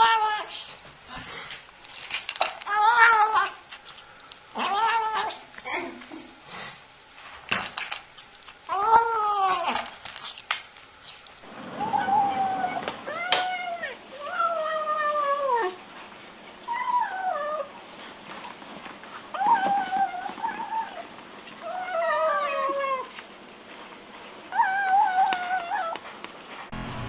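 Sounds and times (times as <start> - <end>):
cat meowing: 0.0 - 0.7, 2.6 - 3.6, 4.6 - 5.4.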